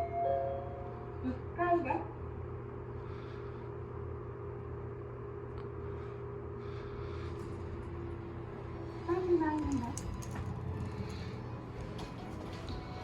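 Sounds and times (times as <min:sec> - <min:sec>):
elevator low hum: 0:00.0 - 0:13.0.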